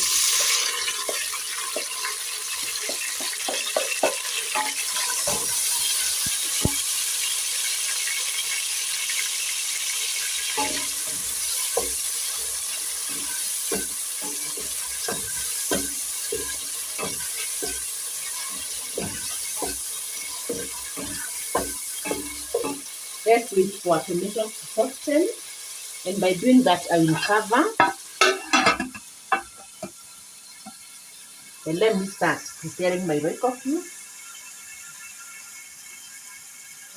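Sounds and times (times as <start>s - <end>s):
spoon scraping and knocking pot: 0.0s - 6.9s, 10.4s - 23.0s, 27.1s - 30.0s
vegetables sizzling in oil: 0.0s - 36.9s.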